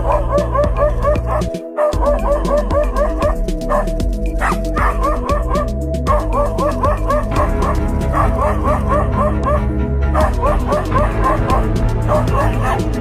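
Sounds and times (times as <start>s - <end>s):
dog yipping: 0.0s - 9.6s
music with steady beat: 0.0s - 13.0s.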